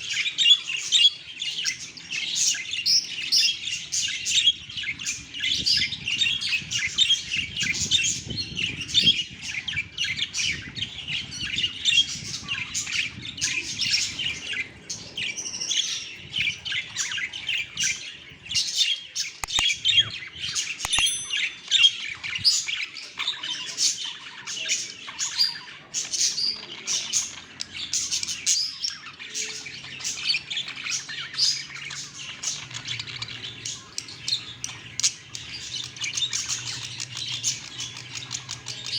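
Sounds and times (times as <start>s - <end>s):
budgerigars chirping and chattering: 0.0s - 38.9s.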